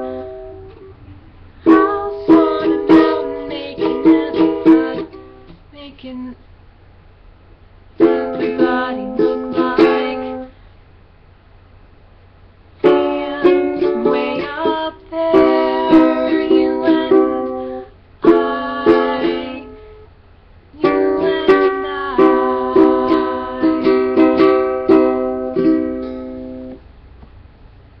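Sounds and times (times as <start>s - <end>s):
ukulele chords strummed: 0.0s - 5.6s, 8.0s - 10.5s, 12.8s - 20.0s, 20.8s - 26.9s.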